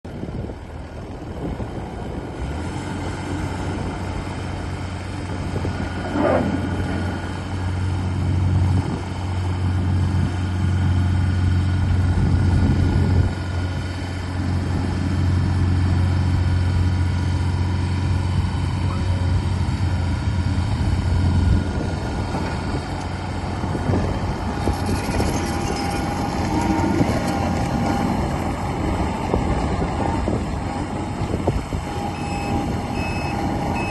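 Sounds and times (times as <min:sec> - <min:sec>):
loader diesel engine running: 0:00.1 - 0:33.9
brief rising and falling whine: 0:05.8 - 0:07.6, 0:23.8 - 0:33.9.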